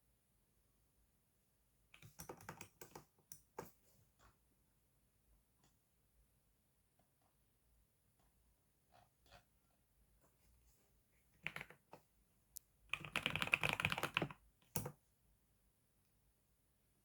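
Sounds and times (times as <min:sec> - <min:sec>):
typing on computer keyboard: 0:02.0 - 0:03.7, 0:11.4 - 0:11.8, 0:12.9 - 0:15.0.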